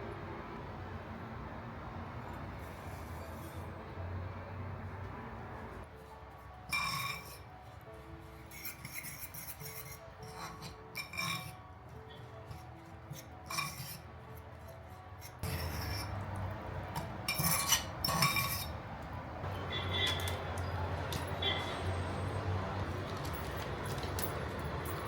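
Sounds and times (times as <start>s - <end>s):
dishes and glassware clinking: 6.7s - 7.5s, 8.5s - 14.0s, 16.9s - 18.8s.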